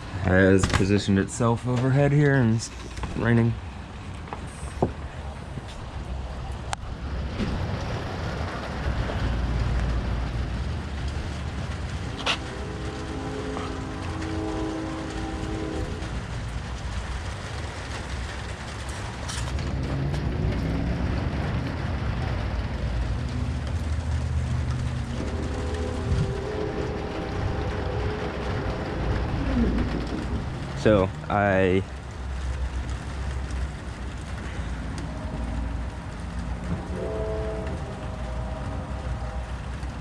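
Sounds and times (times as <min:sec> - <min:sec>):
low rumble: 0:00.0 - 0:40.0
steady rain: 0:00.0 - 0:40.0
distant train horn: 0:11.9 - 0:16.6, 0:23.4 - 0:31.1, 0:34.4 - 0:40.0.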